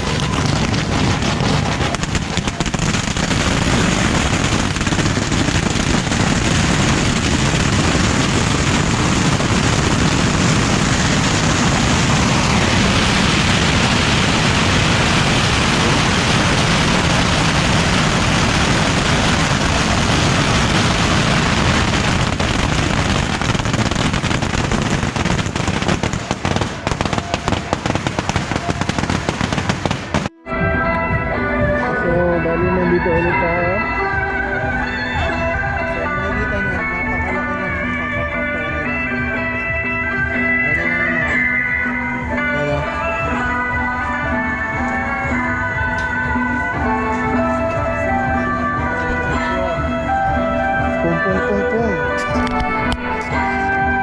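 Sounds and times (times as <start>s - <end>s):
bottle rockets crackling barrage: 0.0s - 30.4s.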